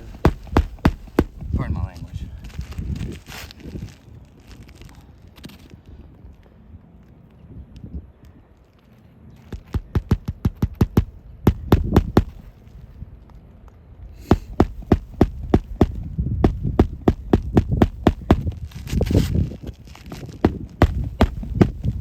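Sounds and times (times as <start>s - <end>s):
hammer strikes on shingle roof: 0.0s - 1.6s, 9.5s - 12.5s, 14.2s - 18.5s, 20.4s - 22.0s.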